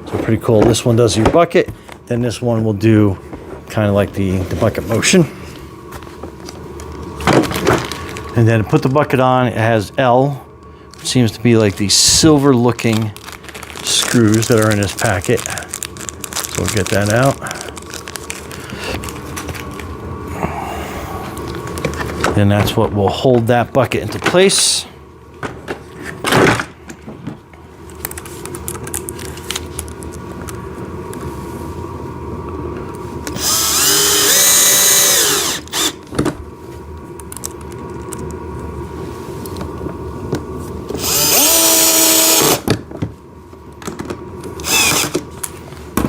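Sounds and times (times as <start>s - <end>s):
low steady hum: 0.0s - 46.0s
power drill whining: 33.3s - 36.0s, 41.0s - 42.7s, 44.6s - 45.2s.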